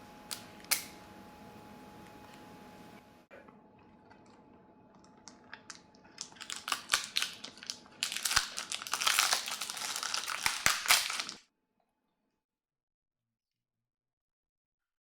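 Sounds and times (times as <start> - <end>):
crinkling and crackling clicks: 4.1 - 11.4.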